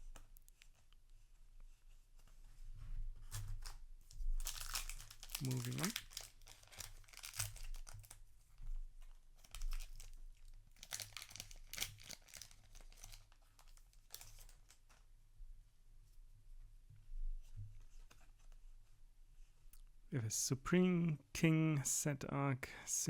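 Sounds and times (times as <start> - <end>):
foil wrapper crinkling and tearing: 3.6 - 8.2, 9.4 - 14.8.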